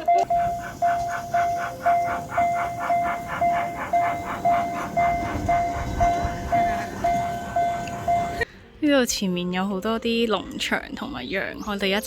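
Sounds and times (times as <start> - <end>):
miniature train chugging: 0.0 - 8.5
ringing tone: 0.0 - 8.5.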